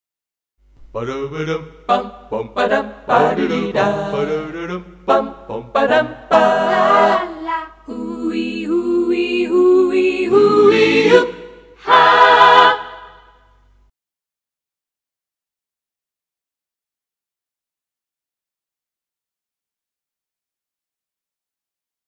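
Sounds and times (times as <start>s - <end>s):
a cappella singing: 0.9s - 13.4s.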